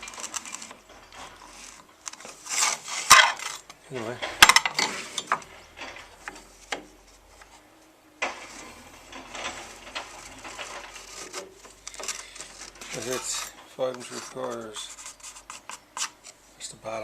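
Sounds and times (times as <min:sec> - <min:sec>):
steady scraping rub: 0:00.0 - 0:07.7, 0:08.3 - 0:16.5.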